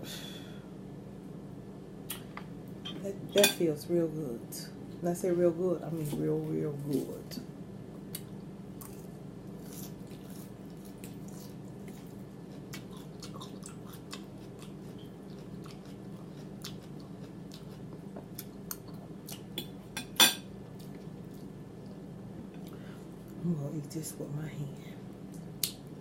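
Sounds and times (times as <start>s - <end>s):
person chewing food: 8.1s - 19.8s.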